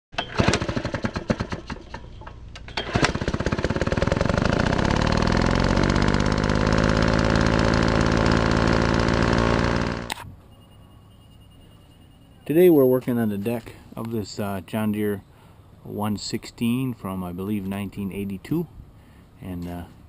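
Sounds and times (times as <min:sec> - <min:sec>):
small gasoline engine sputtering: 0:00.2 - 0:10.2.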